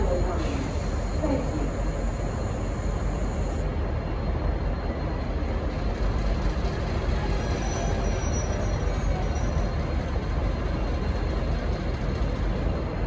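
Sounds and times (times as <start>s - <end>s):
diesel locomotive rumbling: 0.0s - 13.0s
high wheel squeals: 7.4s - 9.8s.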